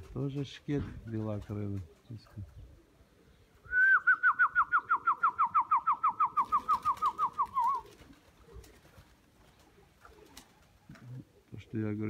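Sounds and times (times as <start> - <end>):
trilled human whistle: 3.7 - 7.8.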